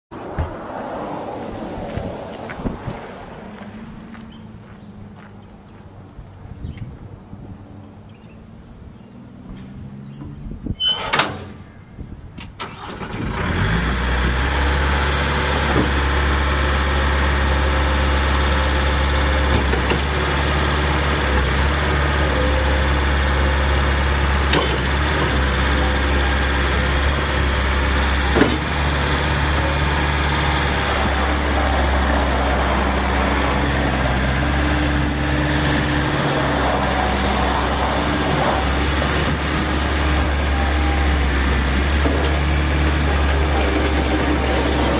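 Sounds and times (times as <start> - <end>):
loader engine cranking and running: 9.6 - 11.8, 12.4 - 44.9.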